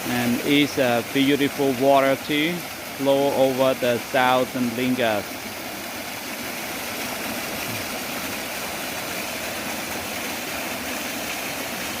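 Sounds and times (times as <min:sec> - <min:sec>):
stream rushing over rocks: 0:00.0 - 0:12.0.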